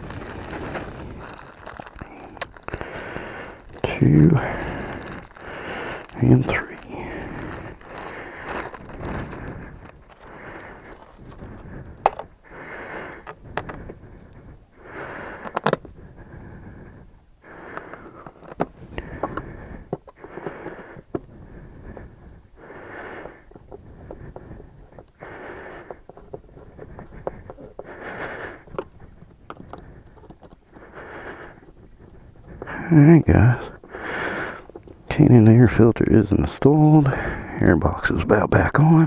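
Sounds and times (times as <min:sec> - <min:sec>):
person breathing heavily: 0:00.0 - 0:38.0
parts clicking and knocking: 0:12.0 - 0:12.3.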